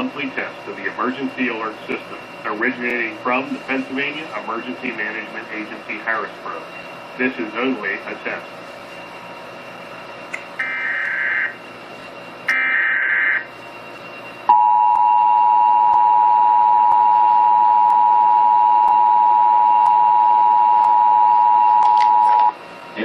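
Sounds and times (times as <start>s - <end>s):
warbling digital data bursts: 12.5s - 13.5s.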